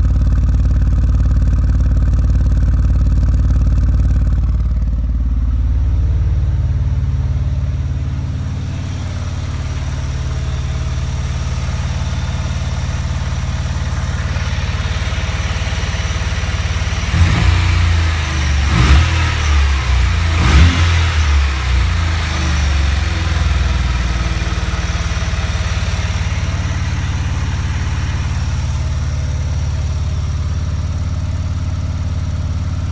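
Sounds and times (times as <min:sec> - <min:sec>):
rotary engine misfiring and revving: 0:00.0 - 0:32.9.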